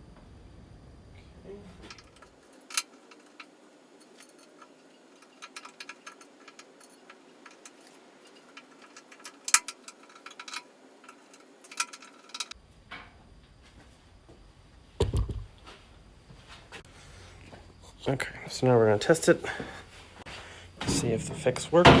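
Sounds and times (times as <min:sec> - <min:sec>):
metallic clicks from hand tools: 0:01.9 - 0:12.6.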